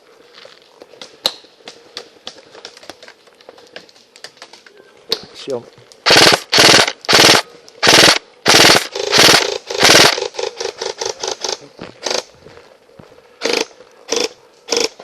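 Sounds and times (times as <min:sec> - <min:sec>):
airsoft rifle full-auto bursts: 0:06.0 - 0:10.3, 0:13.4 - 0:15.0.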